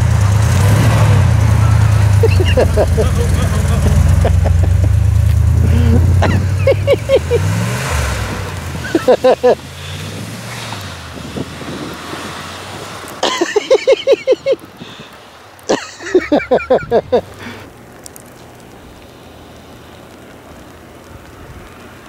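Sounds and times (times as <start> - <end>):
low vehicle hum: 0.0 - 22.0.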